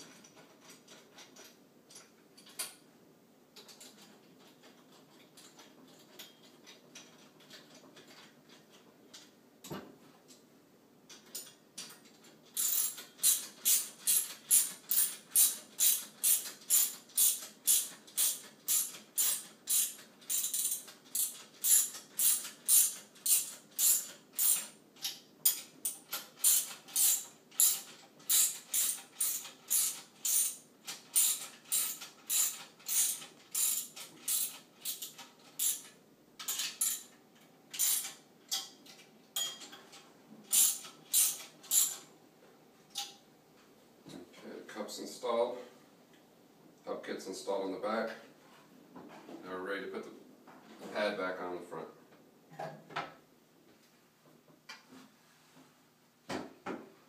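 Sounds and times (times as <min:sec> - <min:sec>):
ratchet wrench clicking: 0:12.6 - 0:37.1, 0:37.8 - 0:38.2, 0:40.5 - 0:42.0.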